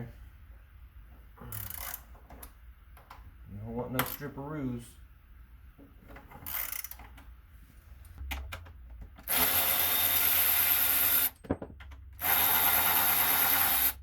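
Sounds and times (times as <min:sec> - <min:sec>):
power drill running: 0:09.3 - 0:11.3, 0:12.2 - 0:14.0.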